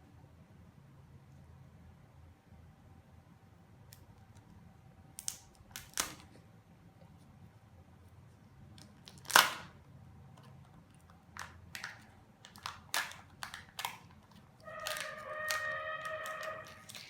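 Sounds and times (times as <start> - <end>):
plastic packaging cracking: 5.2 - 6.3, 8.8 - 9.8, 11.4 - 17.0
plastic clicks and rustles: 8.8 - 17.0
steady pitched tone: 14.6 - 16.9.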